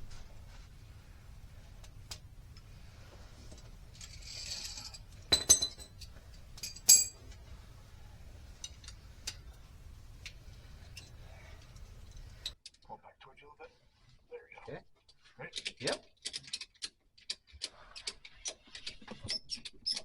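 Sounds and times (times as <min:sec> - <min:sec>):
metal hardware clinking: 0:03.5 - 0:07.4.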